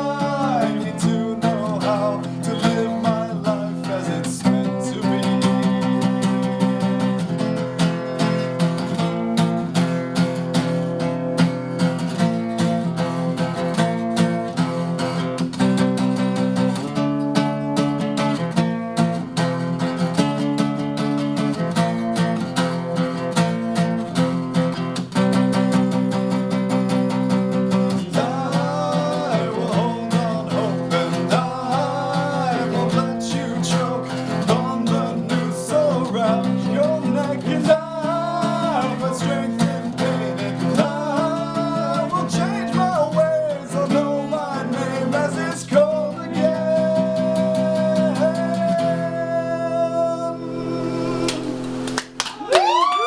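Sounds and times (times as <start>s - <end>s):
person singing: 0.0s - 7.4s, 27.9s - 53.0s
acoustic guitar strumming: 0.0s - 52.5s.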